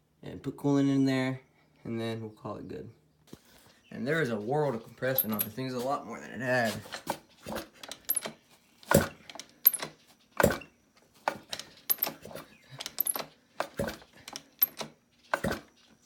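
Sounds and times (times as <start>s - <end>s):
metallic clicks and knocks: 7.8s - 10.6s, 11.3s - 12.2s, 12.8s - 15.6s.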